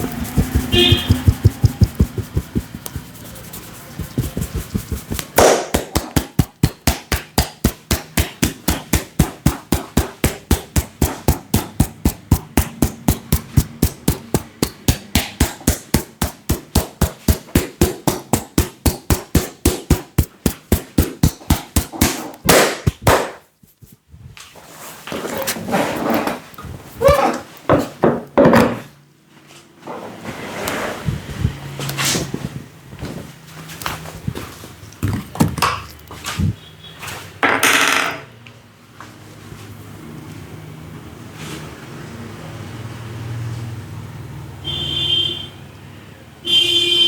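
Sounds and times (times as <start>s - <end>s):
hands striking in percussive massage: 0.0s - 24.0s.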